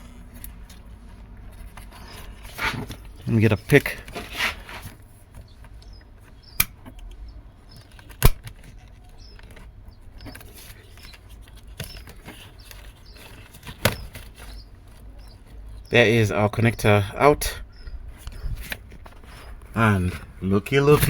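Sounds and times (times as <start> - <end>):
sharp clicks: 5.6 - 11.2.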